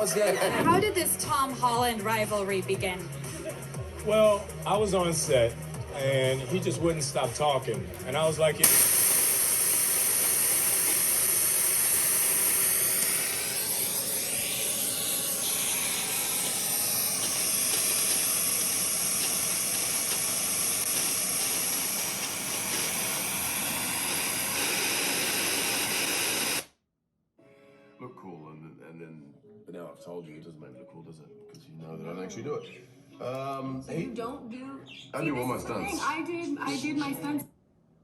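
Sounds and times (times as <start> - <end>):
loud static hiss: 8.0 - 26.6.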